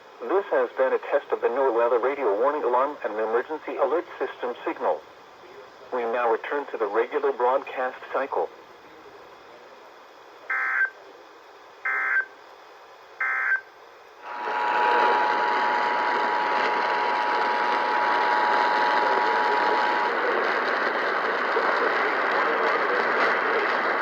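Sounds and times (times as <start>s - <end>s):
short bursts of data tones: 13.2s - 13.7s.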